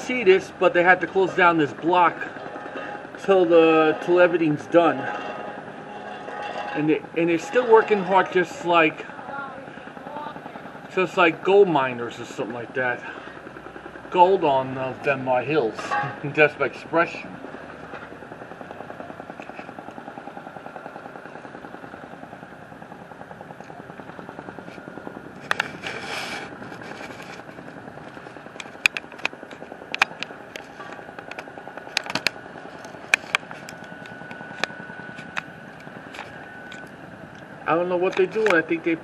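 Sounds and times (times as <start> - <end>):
machinery engine throbbing: 0.0 - 39.0
sharp clanks and knocks: 4.9 - 7.0.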